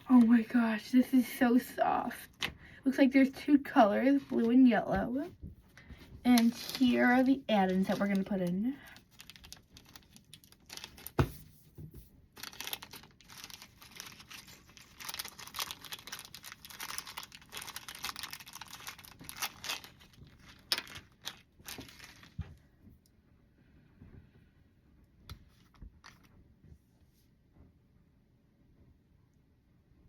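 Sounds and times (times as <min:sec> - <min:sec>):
plastic packet crinkling: 0:06.3 - 0:11.3, 0:12.4 - 0:22.4.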